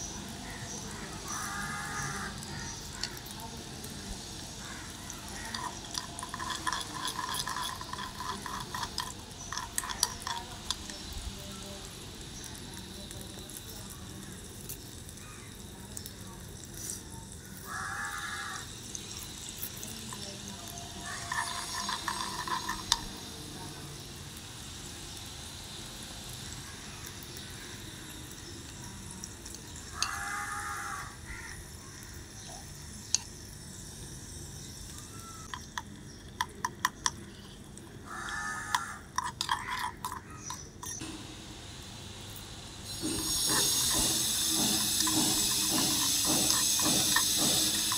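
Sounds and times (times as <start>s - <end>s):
food sizzling in a pan: 0.0s - 47.9s
voice-like calls: 0.1s - 11.9s, 17.4s - 23.5s, 34.9s - 41.0s, 43.0s - 47.9s
utensil clicking against pot: 0.1s - 24.1s, 25.1s - 41.1s, 42.9s - 47.9s.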